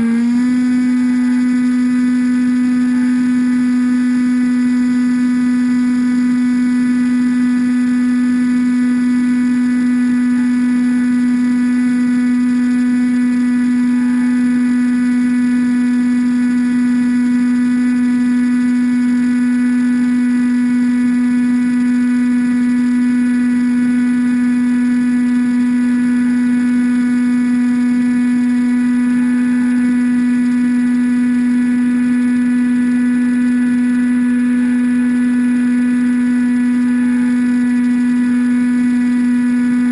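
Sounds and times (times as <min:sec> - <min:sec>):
model plane motor humming: 0:00.0 - 0:39.9.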